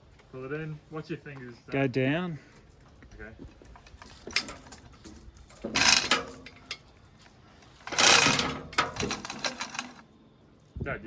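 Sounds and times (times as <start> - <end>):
metal housing grating and clattering: 3.7 - 6.9, 7.8 - 10.0
sharp metal clicks: 5.6 - 6.8, 7.9 - 10.0.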